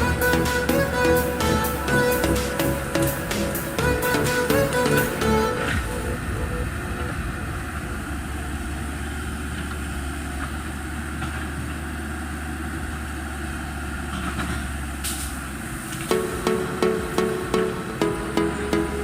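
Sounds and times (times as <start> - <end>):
excavator engine running: 0.0 - 14.0.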